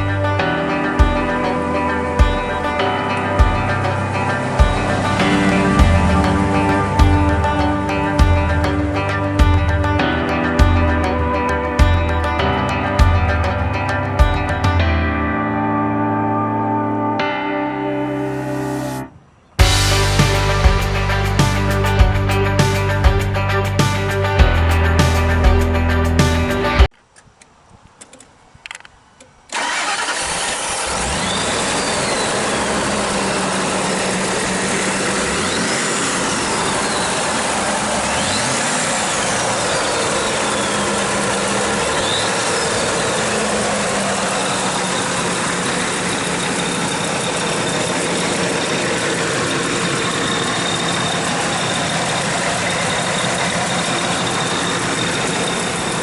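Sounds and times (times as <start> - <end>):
engine idling and revving: 3.4 - 12.1, 19.6 - 26.9, 29.6 - 56.0
engine cranking and starting: 29.5 - 56.0.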